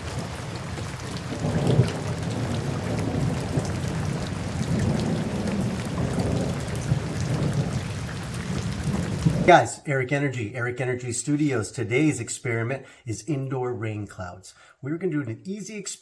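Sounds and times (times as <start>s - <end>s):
low thunder: 0.0s - 9.6s
steady rain: 0.0s - 9.6s.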